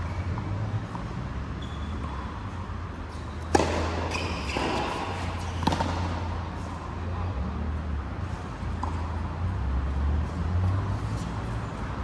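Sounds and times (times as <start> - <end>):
ball hitting racket with echo: 3.4 - 6.8.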